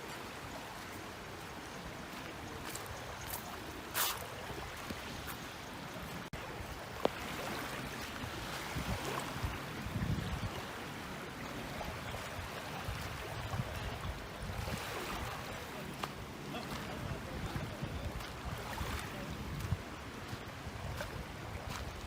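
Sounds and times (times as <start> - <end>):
sea water splashing and lapping: 0.0 - 22.0
wind rumble on microphone: 6.5 - 22.0.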